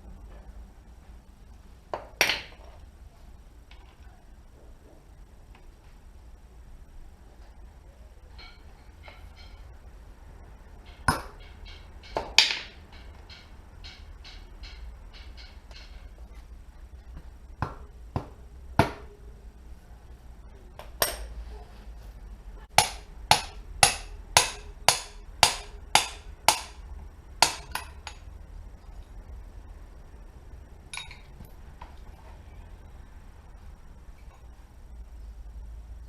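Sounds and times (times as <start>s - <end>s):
hammer striking metal: 8.4s - 9.7s, 10.9s - 16.2s, 22.7s - 26.8s, 27.4s - 28.3s.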